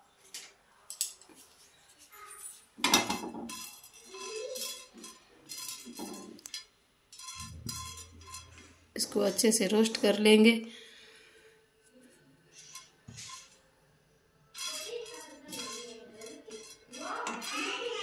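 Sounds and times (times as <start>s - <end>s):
spices rattling in pan: 2.8s - 8.6s, 14.6s - 18.0s
spoon scraping metal pan: 7.1s - 9.4s, 12.5s - 13.6s, 14.6s - 18.0s.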